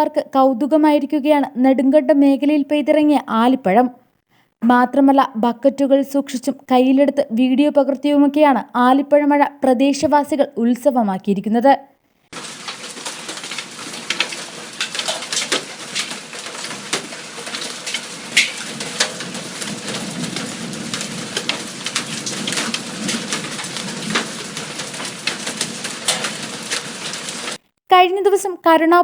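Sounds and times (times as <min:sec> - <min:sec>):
hailstones ticking and clicking: 0:12.3 - 0:27.6
heavy rain hissing: 0:12.3 - 0:27.6.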